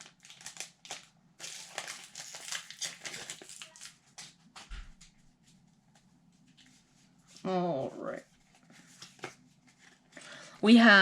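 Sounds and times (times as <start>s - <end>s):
wrapper crinkling and tearing: 0.0s - 4.4s.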